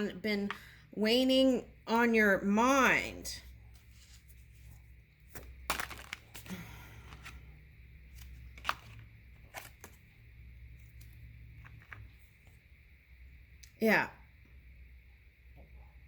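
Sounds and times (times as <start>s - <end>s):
steady low hum: 0.0s - 16.0s
cards rustling: 3.7s - 10.0s
cards clicking and tapping: 5.3s - 6.5s, 8.2s - 10.0s.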